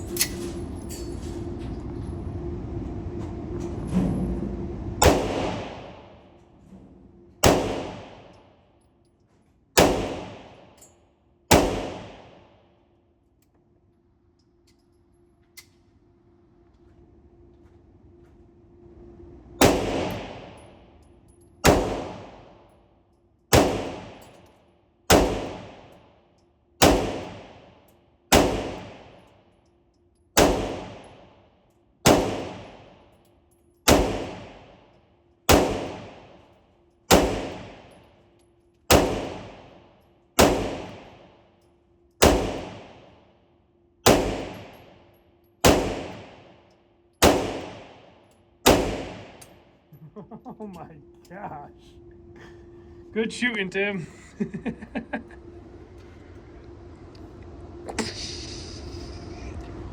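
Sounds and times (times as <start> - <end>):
pistol shots with echo: 5.0 - 6.0, 7.4 - 8.4, 9.8 - 10.8, 11.5 - 12.5, 19.6 - 20.6, 21.6 - 22.5, 23.5 - 24.3, 25.1 - 26.0, 26.8 - 27.7, 28.3 - 29.2, 30.4 - 31.3, 32.0 - 33.0, 33.9 - 34.8, 35.5 - 36.4, 37.1 - 38.0, 38.9 - 39.8, 40.4 - 41.3, 42.2 - 43.1, 44.0 - 44.9, 45.6 - 46.5, 47.2 - 49.5.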